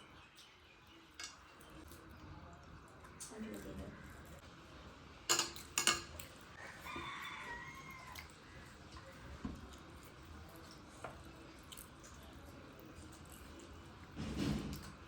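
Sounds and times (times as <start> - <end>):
rooster crowing: 6.6 - 8.3.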